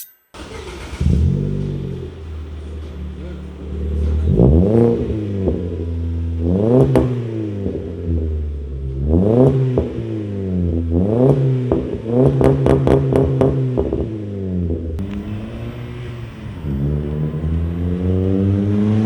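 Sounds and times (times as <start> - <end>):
car engine revving: 0.4 - 19.0
exhaust cracks: 15.0 - 19.0.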